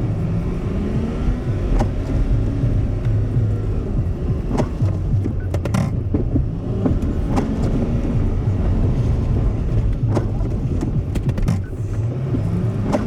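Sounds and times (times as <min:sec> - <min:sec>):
truck engine and road rumble: 0:00.0 - 0:13.0
sharp clicks or knocks: 0:01.7 - 0:03.2, 0:04.4 - 0:08.0, 0:09.9 - 0:13.0.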